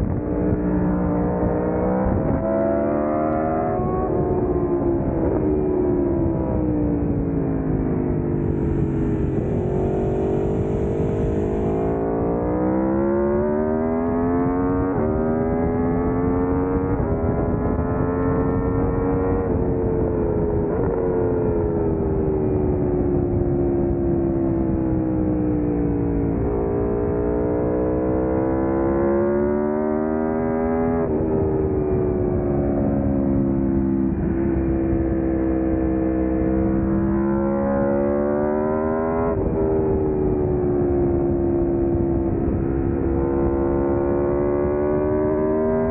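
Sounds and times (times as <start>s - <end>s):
motorcycle engine revving: 8.3s - 22.5s, 26.1s - 45.9s.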